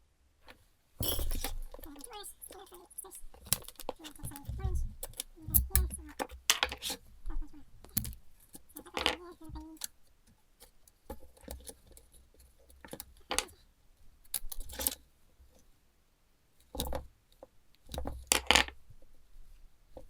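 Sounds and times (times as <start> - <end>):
metal tools clinking on workbench: 1.0 - 2.7.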